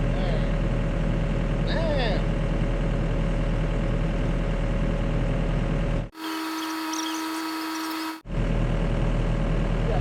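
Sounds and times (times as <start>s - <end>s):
faint high chirps: 6.2s - 8.2s.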